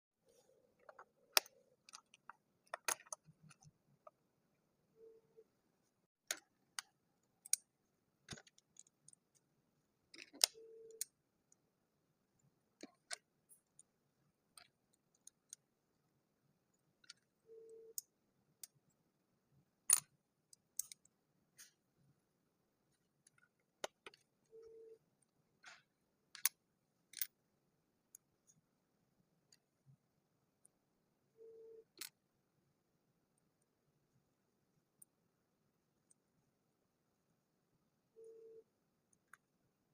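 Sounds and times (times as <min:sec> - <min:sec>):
plastic blocks clicking: 0:00.8 - 0:03.7.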